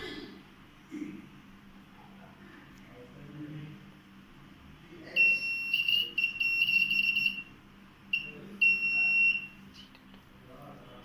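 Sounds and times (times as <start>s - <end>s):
electronic buzzer beeping: 5.2s - 7.5s, 8.1s - 9.6s.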